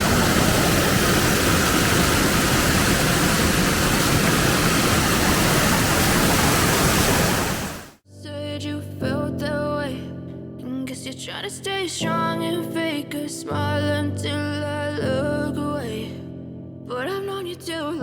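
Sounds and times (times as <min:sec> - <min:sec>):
waterfall roaring: 0:00.0 - 0:08.0.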